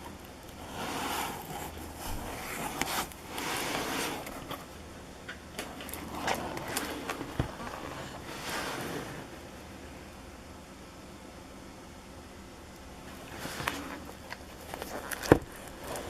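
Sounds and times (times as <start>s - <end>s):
packaging rustling and scraping: 0.0s - 4.8s, 5.6s - 9.5s, 13.1s - 16.0s.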